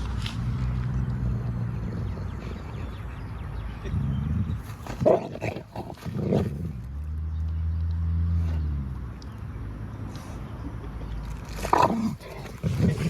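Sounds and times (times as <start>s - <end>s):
large dog growling: 3.6s - 6.9s, 11.5s - 13.0s.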